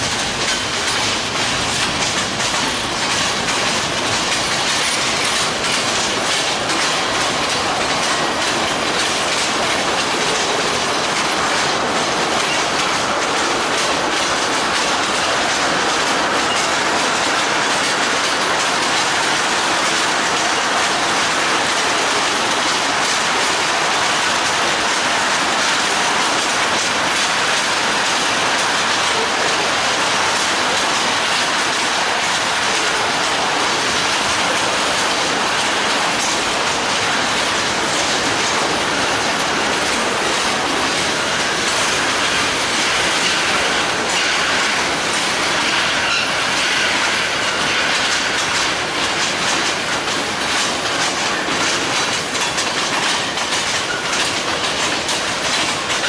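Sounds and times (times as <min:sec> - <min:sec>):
rail joints clickety-clack: 0:00.0 - 0:56.0
train wheels on rails: 0:00.0 - 0:56.0
wheel squeal: 0:46.0 - 0:46.4.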